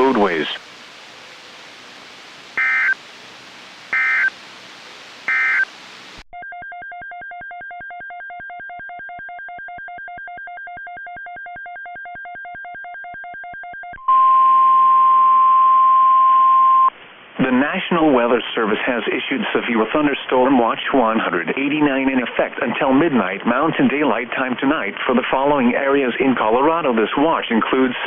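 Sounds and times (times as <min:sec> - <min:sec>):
radio hiss: 0:00.0 - 0:03.0
loud steady alert tone: 0:02.6 - 0:03.0, 0:03.9 - 0:04.3, 0:05.3 - 0:05.7
rapid two-pitch electronic beeping: 0:02.6 - 0:03.0, 0:04.0 - 0:04.3, 0:05.3 - 0:05.7
warbling data bursts: 0:02.6 - 0:03.0, 0:03.9 - 0:04.3, 0:05.3 - 0:05.7.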